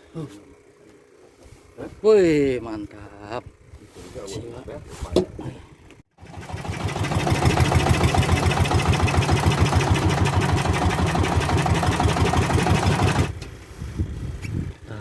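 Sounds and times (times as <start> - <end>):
boat engine chugging: 6.2 - 13.3.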